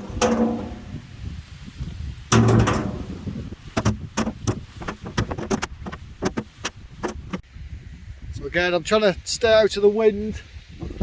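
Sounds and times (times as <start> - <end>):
rock clanging into metal tub: 0.0 - 1.1, 2.3 - 6.6
stones knocking into metal tub: 0.0 - 1.1, 2.3 - 7.4.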